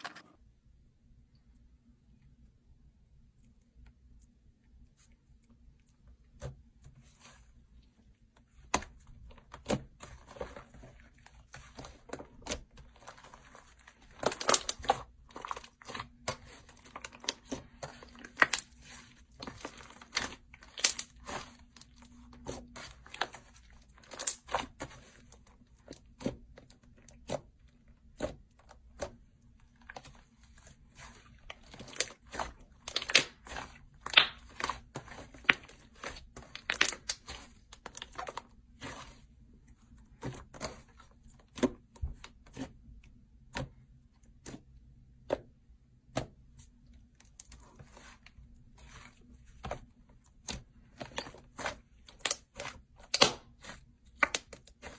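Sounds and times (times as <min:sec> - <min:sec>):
slime crackling and popping: 0:14.1 - 0:21.5, 0:31.6 - 0:38.4, 0:51.2 - 0:54.9.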